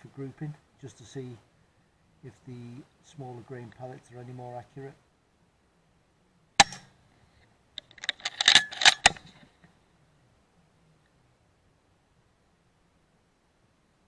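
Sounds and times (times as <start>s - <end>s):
air rifle shot: 6.6s - 6.9s
metallic clicks of rifle action: 6.6s - 6.9s, 7.8s - 9.5s.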